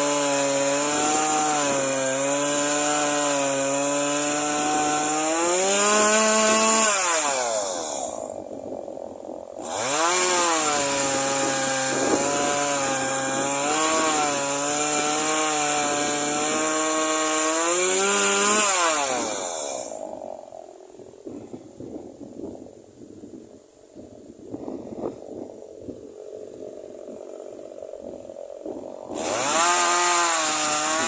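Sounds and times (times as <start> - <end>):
chainsaw revving: 0.0 - 8.4, 9.6 - 20.0, 29.0 - 31.0.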